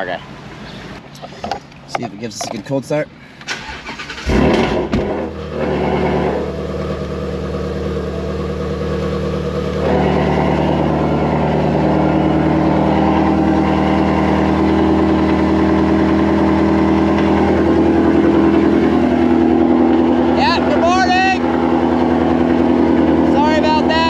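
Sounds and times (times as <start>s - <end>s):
car engine idling fast: 3.7s - 24.0s.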